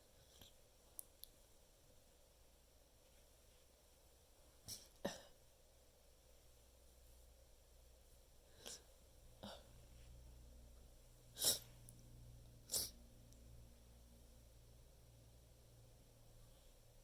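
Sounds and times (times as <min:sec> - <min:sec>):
person sneezing: 0:11.4 - 0:11.8, 0:12.7 - 0:13.0.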